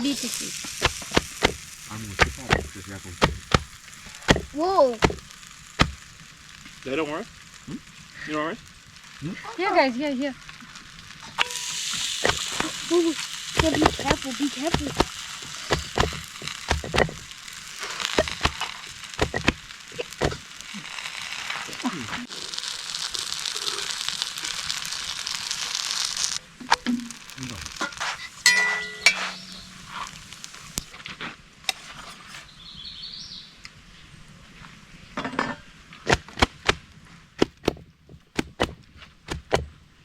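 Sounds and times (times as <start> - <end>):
flatbread sizzling in oil: 0.0 - 33.5
utensils clinking and knocking: 0.8 - 6.0, 13.6 - 17.3, 27.8 - 30.7.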